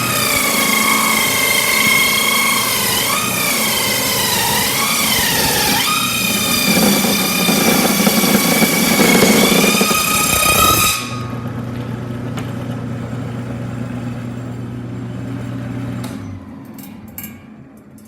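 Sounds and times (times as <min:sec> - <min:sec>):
saw cutting wood: 0:00.0 - 0:11.4
table saw blade whine: 0:00.0 - 0:16.7.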